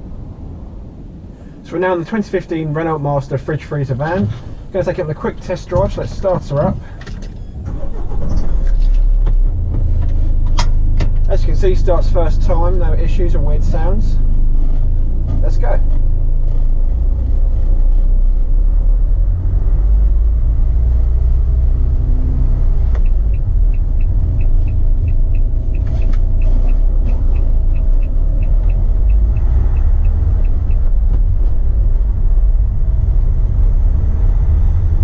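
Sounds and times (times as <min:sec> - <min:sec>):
van engine rumble: 0:00.0 - 0:35.0
light regular ticking: 0:22.9 - 0:31.4.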